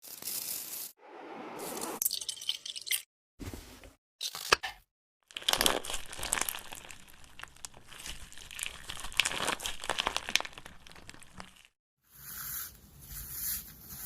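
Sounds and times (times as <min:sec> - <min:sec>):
crackling and crinkling while stirring: 0:05.2 - 0:14.0.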